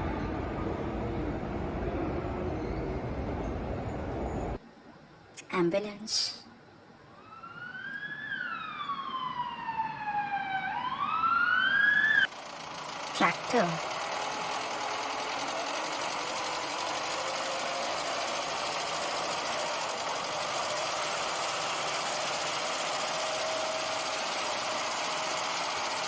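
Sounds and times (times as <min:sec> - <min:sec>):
tractor engine running: 0:00.0 - 0:04.6, 0:12.3 - 0:26.0.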